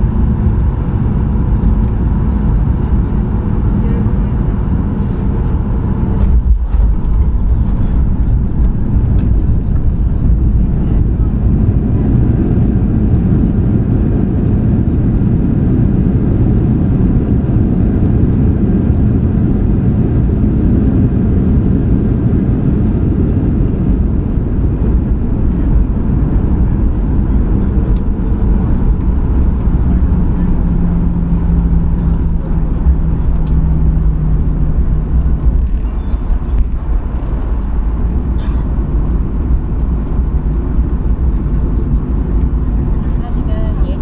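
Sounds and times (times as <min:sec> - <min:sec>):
airplane cabin engine rumble: 0:00.0 - 0:44.0.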